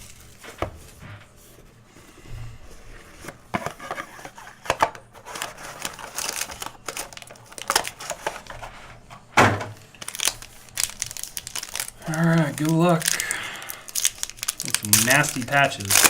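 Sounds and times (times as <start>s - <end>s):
cardboard packaging handled: 0.0s - 9.1s, 9.7s - 16.0s
plastic wrap crinkling and tearing: 3.9s - 8.8s, 9.8s - 16.0s.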